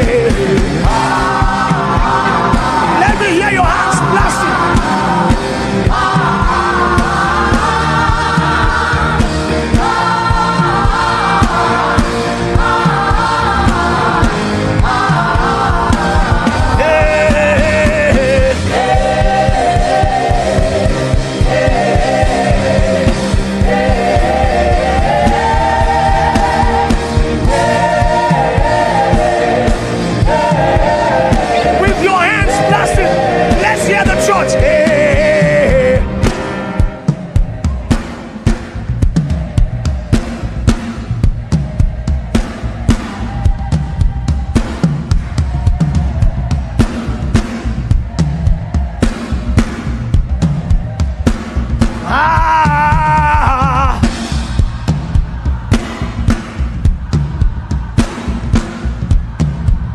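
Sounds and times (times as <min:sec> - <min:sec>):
gospel accompaniment with a beat: 0:00.0 - 0:59.9
person singing held phrases: 0:03.0 - 0:04.7, 0:31.6 - 0:36.0, 0:52.0 - 0:54.1.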